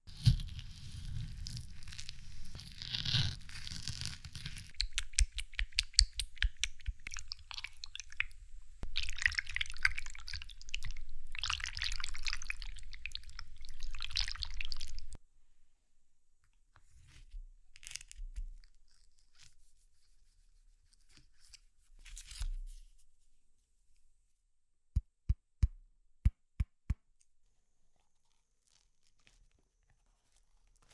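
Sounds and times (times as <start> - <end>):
small wet clicks: 3.4 - 15.2.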